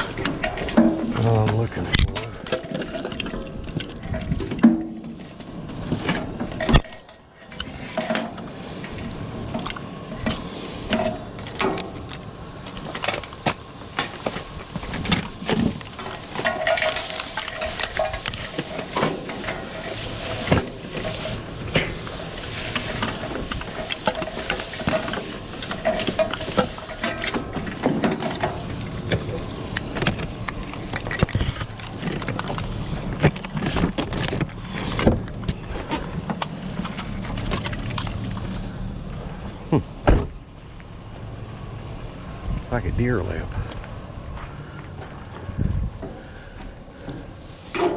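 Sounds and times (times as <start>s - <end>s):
debris clattering and knocking: 0.0s - 8.5s, 9.5s - 38.3s, 46.0s - 47.9s.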